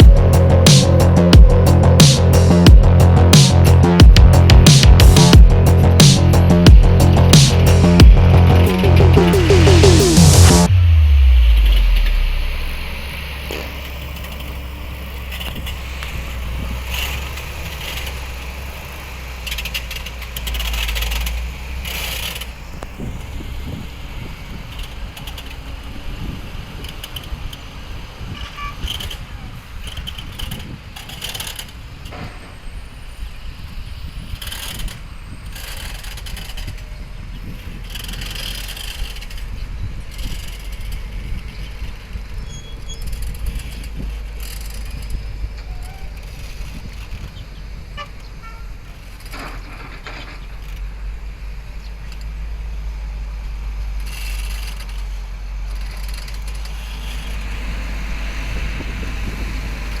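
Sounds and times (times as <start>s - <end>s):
diesel engine rumbling: 0.0s - 60.0s.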